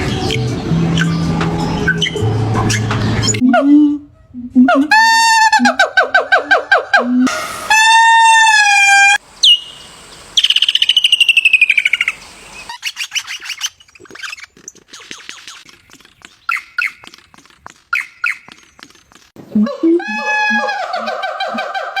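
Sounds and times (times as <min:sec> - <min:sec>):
rapid pulsing bird call: 0:06.0 - 0:14.4
drawn-out bird call: 0:07.3 - 0:19.3
short bird chirps: 0:09.4 - 0:15.7.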